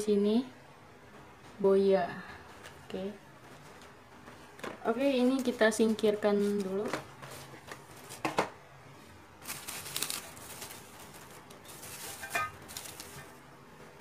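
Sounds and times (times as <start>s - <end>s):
packaging rustling and crinkling: 3.5s - 8.4s, 9.4s - 13.6s.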